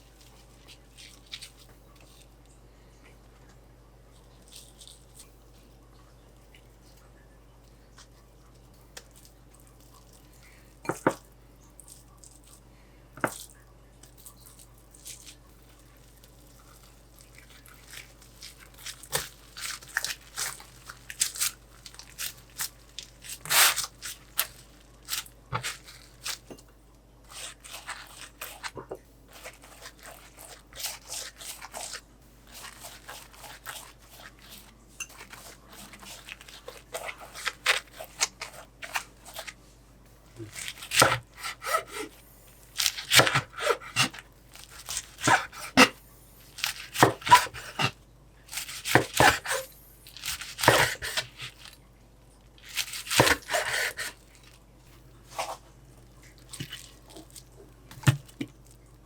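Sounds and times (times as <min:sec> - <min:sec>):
food preparation clicks and crunches: 0:00.0 - 0:02.6, 0:03.4 - 0:05.7, 0:06.3 - 0:12.6, 0:13.2 - 0:39.6, 0:40.2 - 0:51.8, 0:52.4 - 0:59.0.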